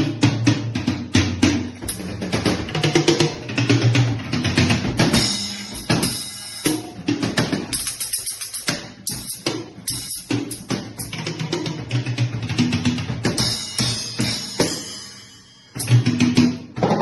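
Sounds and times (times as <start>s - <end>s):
bass drum and snare strokes: 0.0s - 11.9s
cymbal washes: 5.2s - 7.0s.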